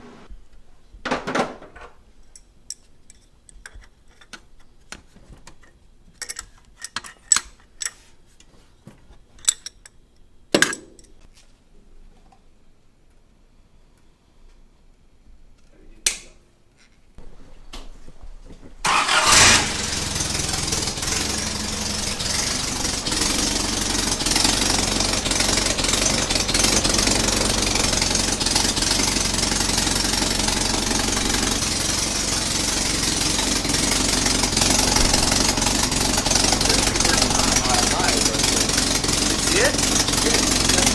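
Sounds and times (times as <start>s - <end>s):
car engine starting and idling: 18.8s - 40.9s.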